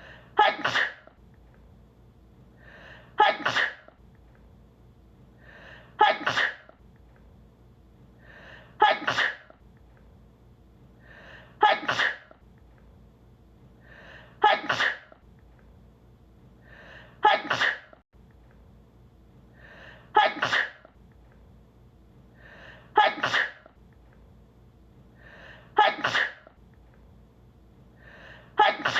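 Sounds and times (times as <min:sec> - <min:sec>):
woman sneezing: 0:00.3 - 0:01.1, 0:03.2 - 0:03.9, 0:06.0 - 0:06.7, 0:08.8 - 0:09.6, 0:11.6 - 0:12.3, 0:14.4 - 0:15.2, 0:17.2 - 0:18.0, 0:20.1 - 0:21.0, 0:22.9 - 0:23.7, 0:25.7 - 0:26.5, 0:28.6 - 0:28.9.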